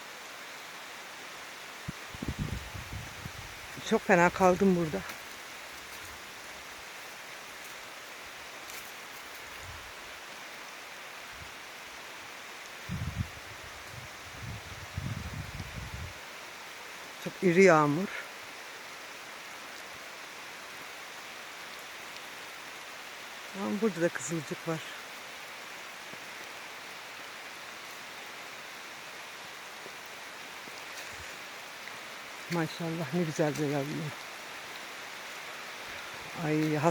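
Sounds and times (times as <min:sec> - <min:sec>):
heavy rain falling: 0:00.0 - 0:36.9.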